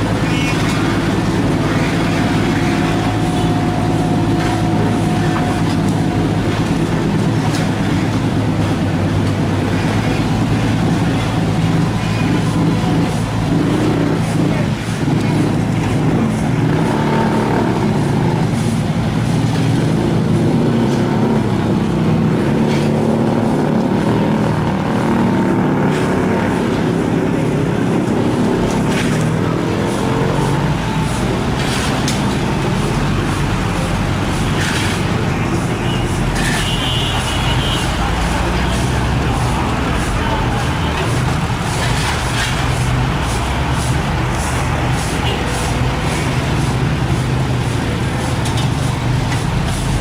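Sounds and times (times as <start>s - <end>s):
heavy diesel engines running: 0.0s - 50.0s.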